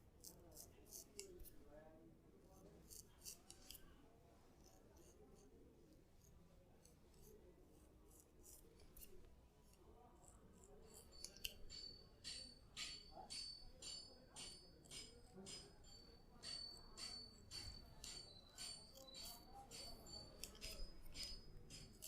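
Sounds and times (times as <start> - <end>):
thin metallic ringing: 10.8 - 22.0.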